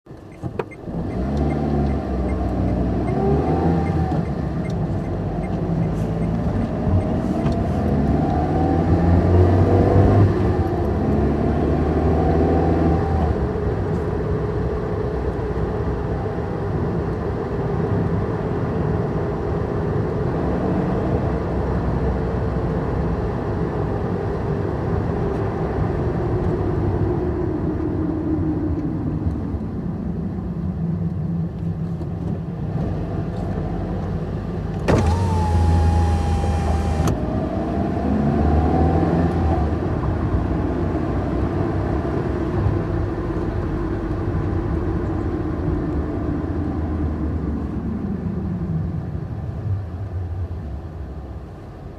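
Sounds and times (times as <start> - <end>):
car engine accelerating: 0.1 - 16.0, 31.5 - 49.0
road noise: 0.1 - 51.9.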